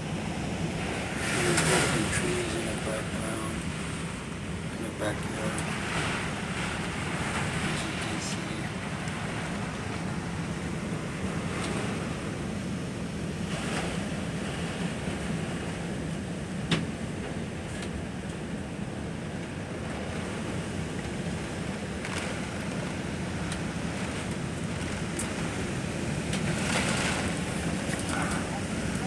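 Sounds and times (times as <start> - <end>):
strong wind rushing: 20.1 - 29.0.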